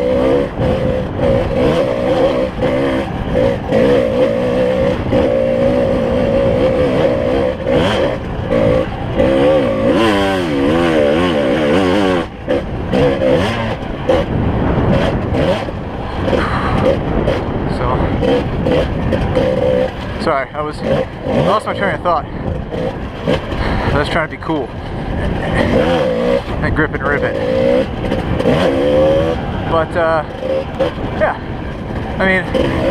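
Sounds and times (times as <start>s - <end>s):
knocks and clatter from bike: 0.0s - 32.9s
two-stroke dirt bike engine revving: 0.0s - 32.9s.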